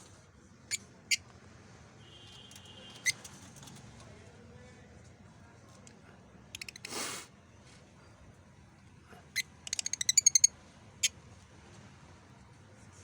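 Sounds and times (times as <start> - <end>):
bird chirping: 9.6 - 10.5.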